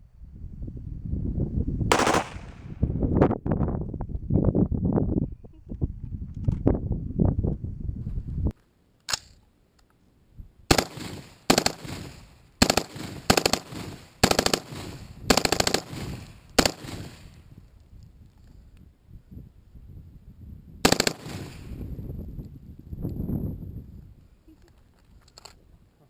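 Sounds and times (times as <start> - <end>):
rifle bursts of rapid fire: 1.9 - 2.7
rifle single shot: 1.9 - 2.8.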